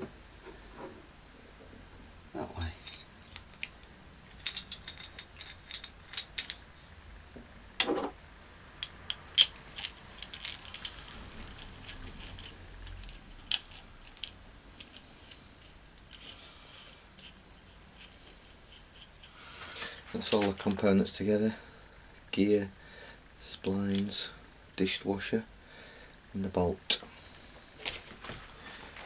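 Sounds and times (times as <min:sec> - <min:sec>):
metal parts clinking on hard surface: 0:02.6 - 0:06.8, 0:08.8 - 0:21.2, 0:23.6 - 0:24.6, 0:27.8 - 0:28.4.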